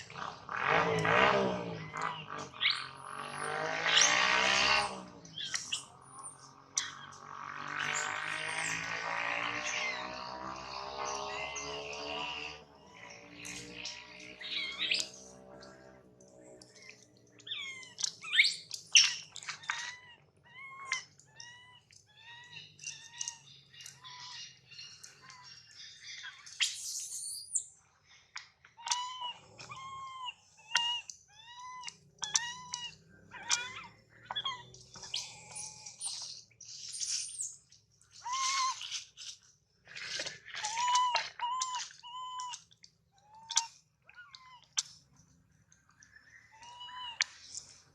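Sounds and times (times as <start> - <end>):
monkey screeching: 11.1 - 15.2, 16.8 - 24.4, 28.8 - 36.3, 38.2 - 39.1, 40.4 - 44.8, 46.5 - 47.8
baby monkey crying: 16.8 - 24.4, 28.8 - 36.2, 38.2 - 38.9, 40.5 - 44.8, 46.5 - 47.3.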